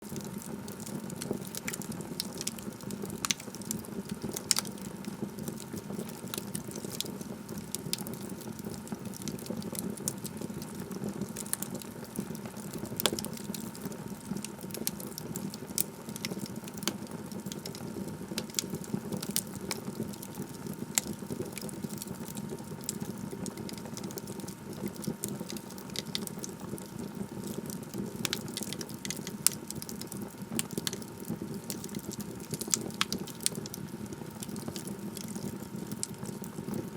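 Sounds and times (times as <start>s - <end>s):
fire crackling and popping: 0.0s - 36.9s.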